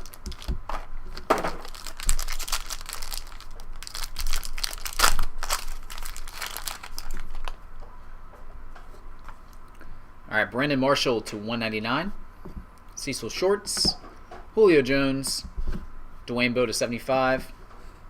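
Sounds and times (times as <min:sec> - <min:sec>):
packaging crinkling and tearing: 0:00.0 - 0:07.6.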